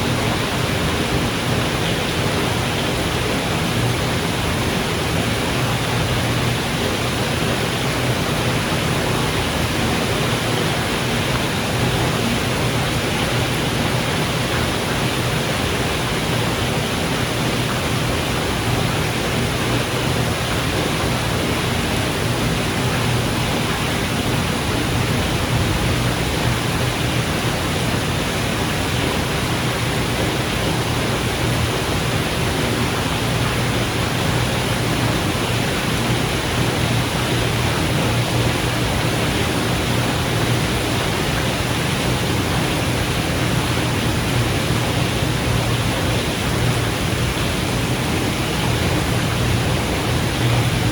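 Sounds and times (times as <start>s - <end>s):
steady rain falling: 0.0s - 50.9s.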